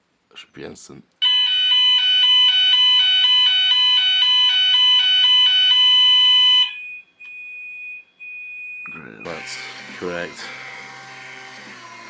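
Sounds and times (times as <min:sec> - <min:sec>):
fire alarm two-tone warble: 0:01.2 - 0:09.6
steady high-pitched alarm tone: 0:09.2 - 0:11.6.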